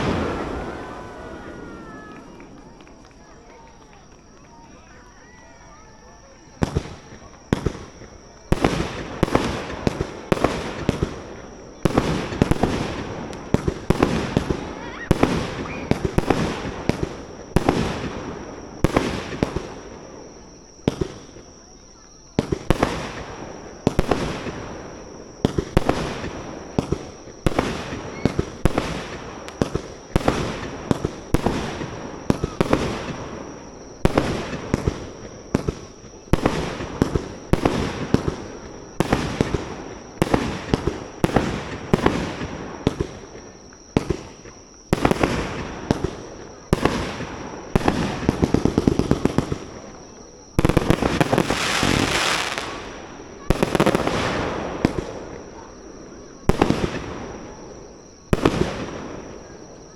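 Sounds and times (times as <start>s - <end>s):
fireworks crackling: 0.0s - 55.8s
firework shell bursts: 51.2s - 52.9s.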